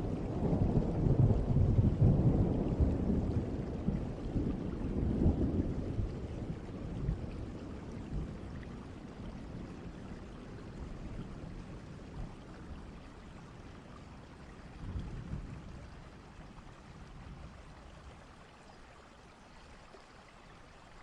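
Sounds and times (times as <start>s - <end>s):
thunder rumbling: 0.0s - 13.0s
steady rain: 0.0s - 21.0s.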